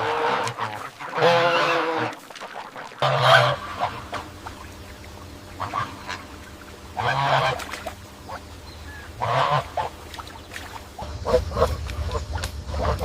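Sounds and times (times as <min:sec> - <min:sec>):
waterfowl quacking or honking: 0:00.0 - 0:04.8, 0:05.4 - 0:13.0
low hum: 0:03.0 - 0:13.0.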